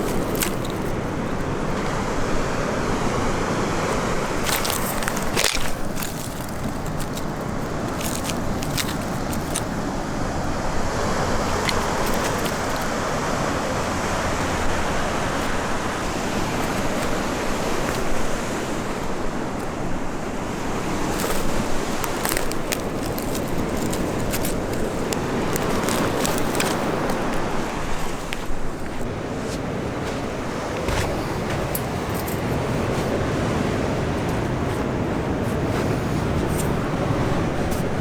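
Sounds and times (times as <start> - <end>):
sharp crackles: 0.0 - 1.2, 4.0 - 10.0, 11.2 - 13.2, 20.8 - 29.0
sea waves washing on shore: 0.0 - 38.0.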